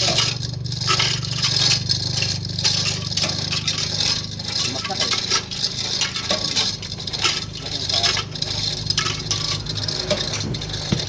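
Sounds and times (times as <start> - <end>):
metal tools clinking: 0.0 - 11.0.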